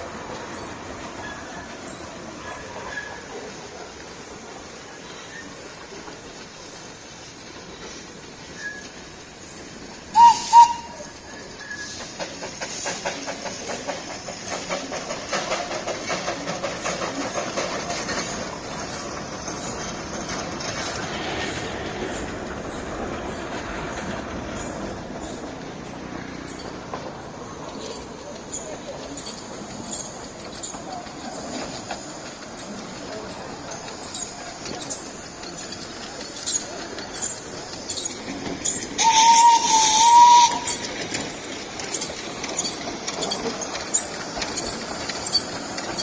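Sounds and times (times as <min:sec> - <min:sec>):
toy train toots: 0:10.2 - 0:11.0, 0:39.0 - 0:41.0
toy train wheels clickety-clack: 0:10.2 - 0:46.0.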